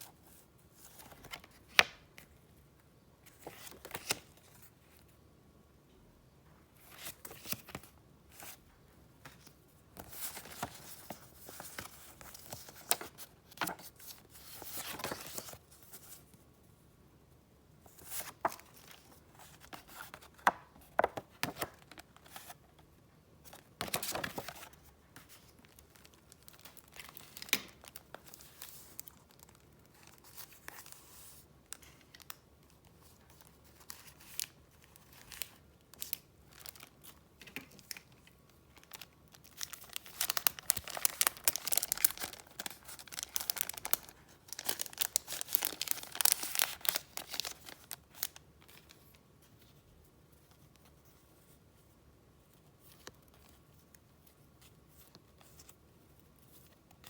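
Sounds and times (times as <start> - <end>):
paper rustling and crinkling: 3.3 - 5.1, 9.2 - 16.4, 17.9 - 22.6, 23.4 - 49.9.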